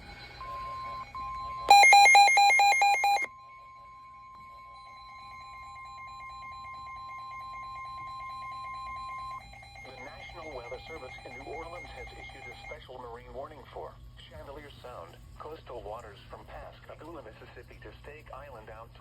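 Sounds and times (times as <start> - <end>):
faint fast beeping: 0.0 - 12.8
loud rapid alternating beeping alarm: 0.0 - 12.8
steady high alert tone: 1.6 - 3.3, 3.9 - 12.8.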